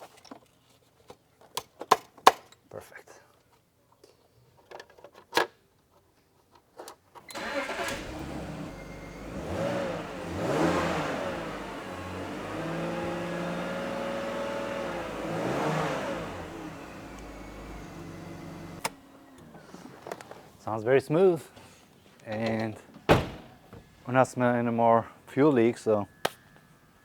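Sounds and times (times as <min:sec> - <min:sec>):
car engine starting and revving: 0:07.3 - 0:19.6.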